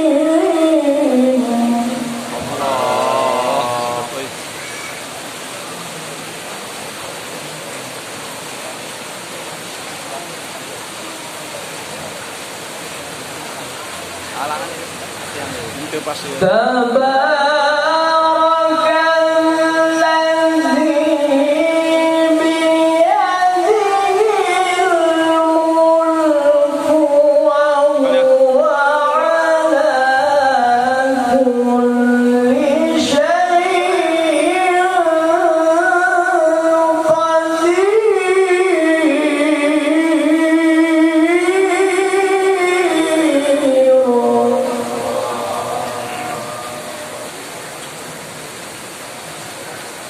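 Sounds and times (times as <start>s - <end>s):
person reciting in melodic chant: 0.0s - 4.4s, 15.4s - 47.4s.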